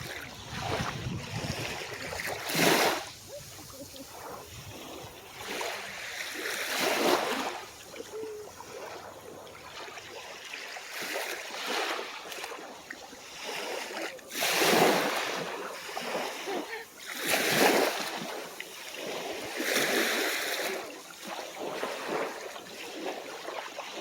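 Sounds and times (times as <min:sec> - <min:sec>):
small waves washing up shore: 0:00.0 - 0:24.0.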